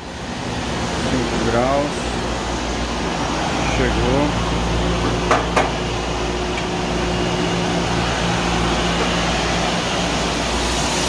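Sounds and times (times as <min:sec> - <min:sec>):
chiller compressor hum: 0:00.0 - 0:11.0
condenser fan noise: 0:00.0 - 0:11.0.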